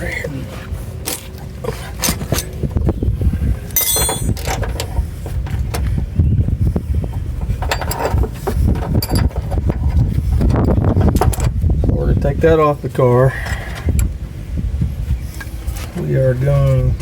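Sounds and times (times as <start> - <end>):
steady low rumble: 0.0 - 17.0
hand tools and metal parts clinking: 1.0 - 2.8, 3.6 - 5.9, 7.4 - 11.5
bright ringing metal clink: 3.8 - 4.3.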